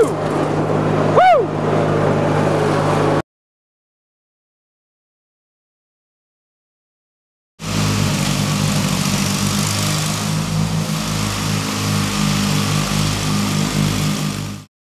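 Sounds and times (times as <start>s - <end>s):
riding lawn mower engine running: 0.0s - 3.2s, 7.6s - 14.7s.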